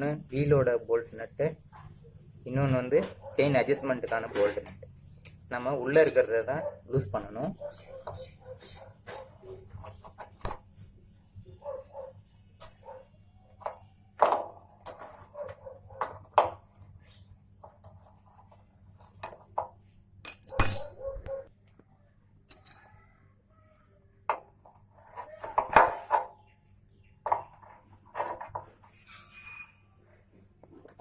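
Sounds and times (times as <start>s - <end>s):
spanner clinking on metal nuts: 22.5s - 22.9s.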